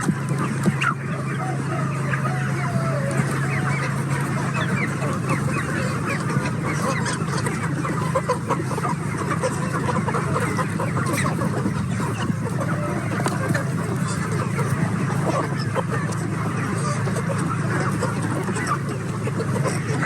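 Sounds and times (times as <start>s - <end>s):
chickens clucking: 0.0s - 20.0s.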